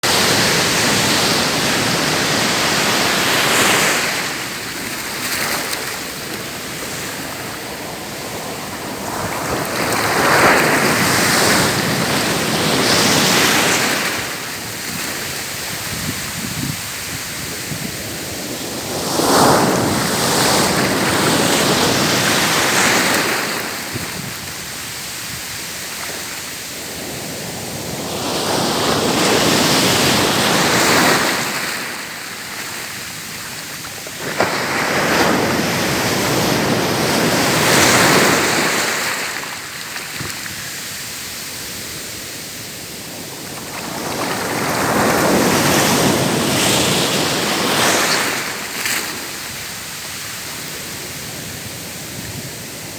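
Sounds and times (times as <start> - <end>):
surf hiss: 0.0 - 52.9
waves breaking on shore: 0.0 - 52.9.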